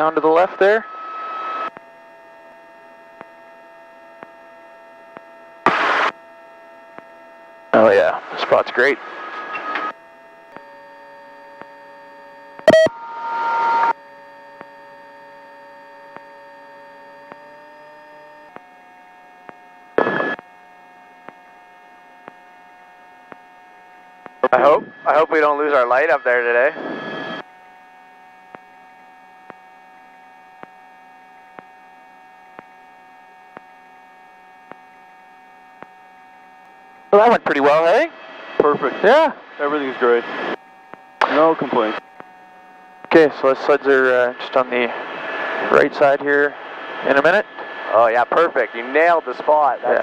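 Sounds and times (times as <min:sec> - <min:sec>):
helicopter cockpit hum: 0:00.0 - 0:50.0
loud short beep: 0:12.7 - 0:14.0.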